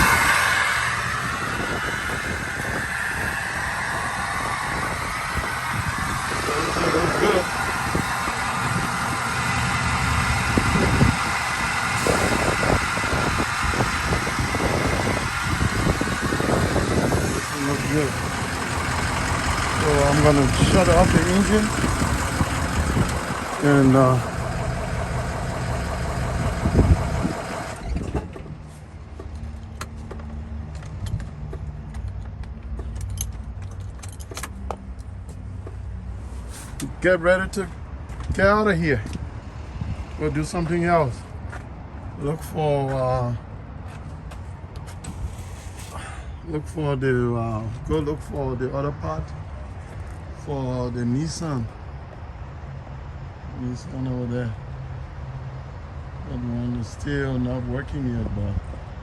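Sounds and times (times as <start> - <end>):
van engine idling: 0.0 - 29.1
keys jangling: 32.1 - 34.6.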